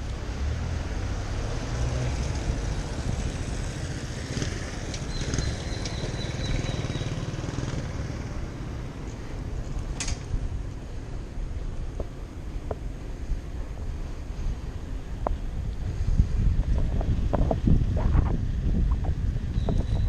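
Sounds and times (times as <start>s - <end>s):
city street traffic: 0.0s - 20.0s
wind on microphone: 11.4s - 20.0s.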